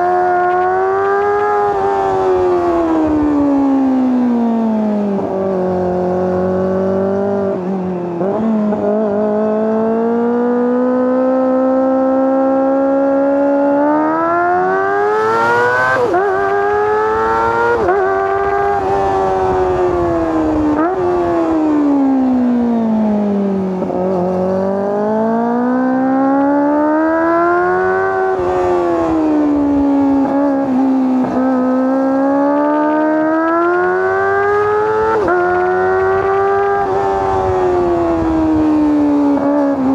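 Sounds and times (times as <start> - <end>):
motorcycle engine revving high: 0.0 - 39.9.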